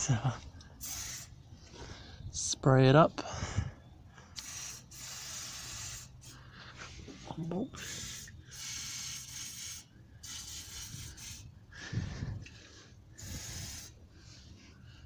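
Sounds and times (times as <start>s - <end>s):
aerosol can spraying: 0.8s - 1.3s, 4.4s - 6.2s, 7.8s - 11.5s, 13.2s - 14.0s.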